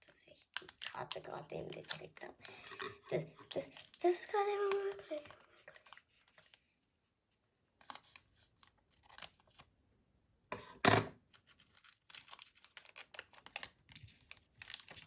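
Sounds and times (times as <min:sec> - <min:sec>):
cards and packaging rustling: 0:00.0 - 0:09.8, 0:10.5 - 0:15.0.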